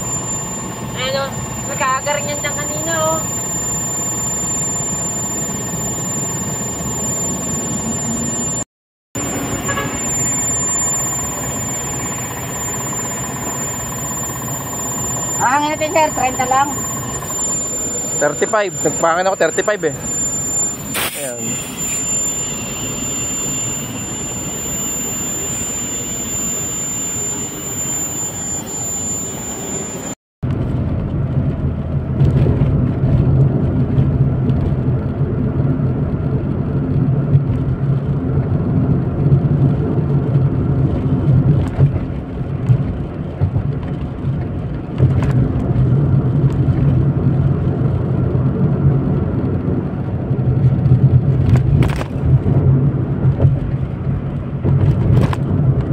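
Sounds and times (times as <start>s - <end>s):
road noise: 0.0s - 3.6s, 9.2s - 55.9s
car engine hum: 0.0s - 8.4s, 9.2s - 29.8s
mechanical noise with high whine: 0.0s - 55.9s.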